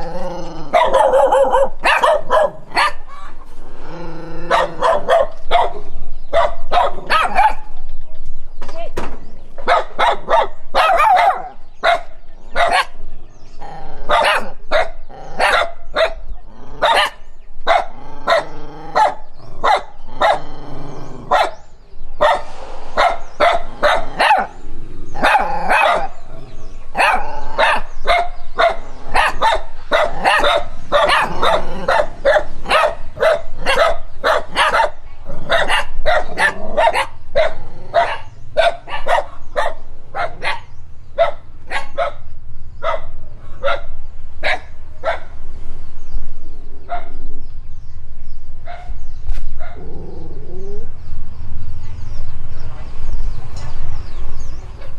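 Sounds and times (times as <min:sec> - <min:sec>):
dog barking: 0:00.7 - 0:03.4, 0:04.5 - 0:07.7, 0:09.6 - 0:13.0, 0:14.1 - 0:16.2, 0:16.8 - 0:20.5, 0:21.3 - 0:21.6, 0:22.2 - 0:24.6, 0:25.2 - 0:26.2, 0:27.0 - 0:42.2, 0:42.8 - 0:45.3, 0:46.9 - 0:47.2.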